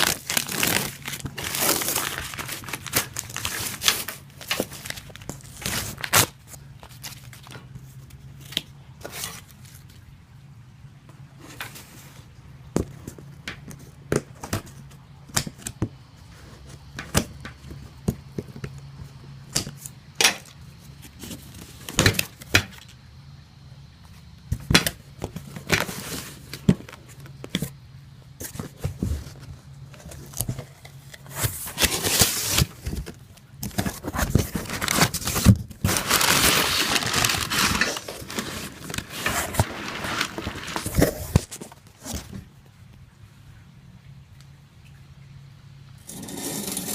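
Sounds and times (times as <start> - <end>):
cardboard tearing and rustling: 0.0 - 7.6, 24.6 - 27.7, 28.4 - 42.4.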